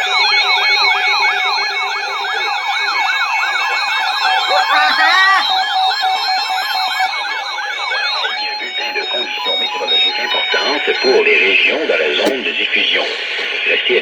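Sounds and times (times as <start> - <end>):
sweeping siren-like alarm tone: 0.0 - 13.7
broken beeping tones: 4.2 - 13.6.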